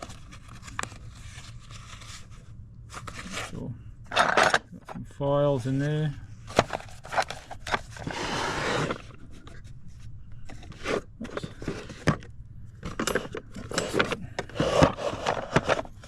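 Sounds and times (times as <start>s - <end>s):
clinks and knocks of tools: 4.1s - 4.8s, 12.8s - 15.8s.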